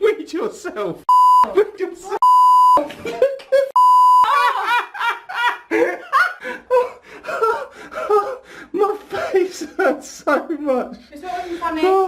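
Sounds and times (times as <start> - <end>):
high censor bleep tone: 1.1 - 1.5, 2.2 - 2.8, 3.8 - 4.3
laughter: 2.8 - 8.4.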